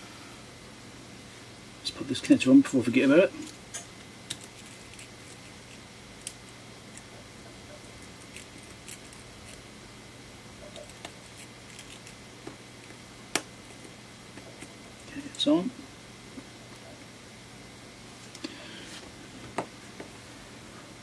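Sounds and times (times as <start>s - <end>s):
faint steady hum: 0.0s - 21.0s.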